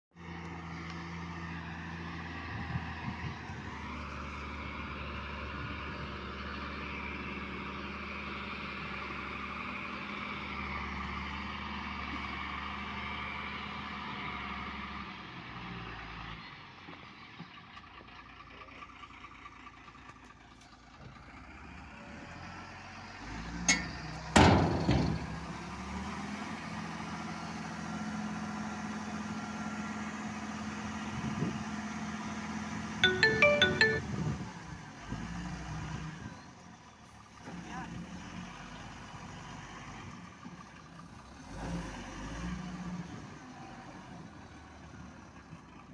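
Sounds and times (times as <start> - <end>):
excavator diesel engine running: 0.2 - 35.6.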